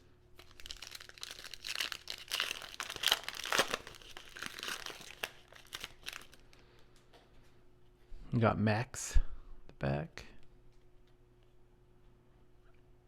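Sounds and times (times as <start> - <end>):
foil wrapper crinkling and tearing: 0.4 - 6.6.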